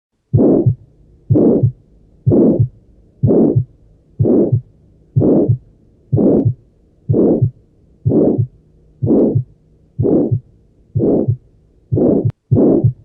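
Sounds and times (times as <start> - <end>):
heart murmur: 0.3 - 13.0
heartbeat through stethoscope: 0.3 - 13.0.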